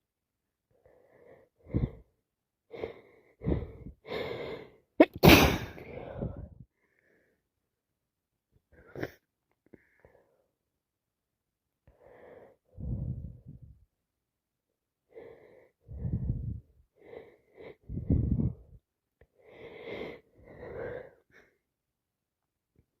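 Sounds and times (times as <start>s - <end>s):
wheezy breaths: 0.8s - 4.8s, 15.1s - 21.6s
woman sneezing: 5.0s - 5.9s.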